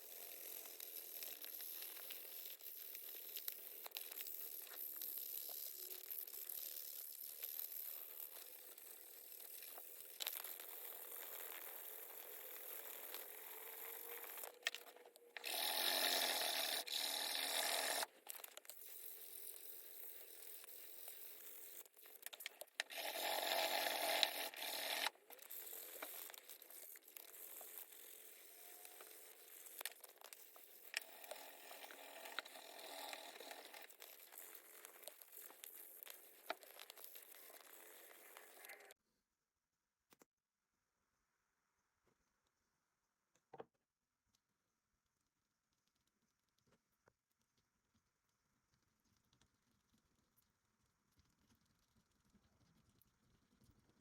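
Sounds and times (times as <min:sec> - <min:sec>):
steady rasping: 0:00.0 - 0:39.0.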